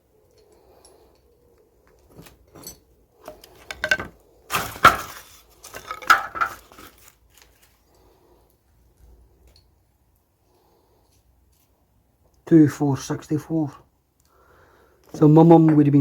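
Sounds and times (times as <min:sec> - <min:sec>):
hard objects knocking together: 0:03.3 - 0:06.8.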